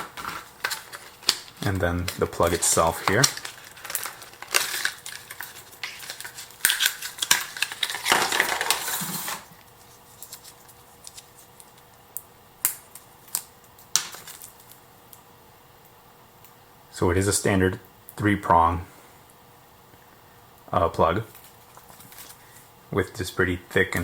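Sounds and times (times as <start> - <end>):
packaging rustling and clattering: 0.0 - 11.8, 14.0 - 14.8, 21.3 - 22.7.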